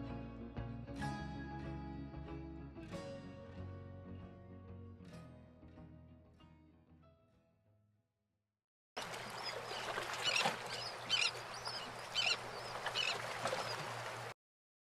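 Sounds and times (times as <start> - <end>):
harsh bird call: 9.2 - 13.2.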